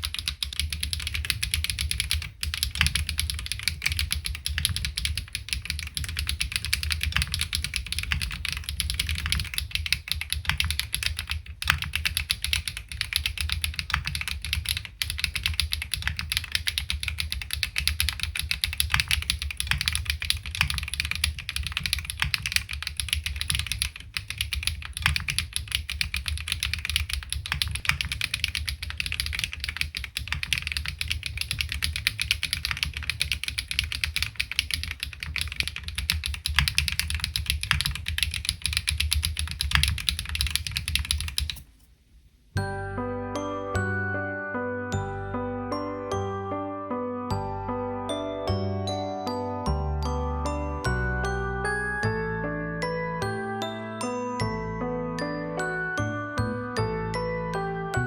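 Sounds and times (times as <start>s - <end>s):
mechanical keyboard typing: 0.0s - 41.6s.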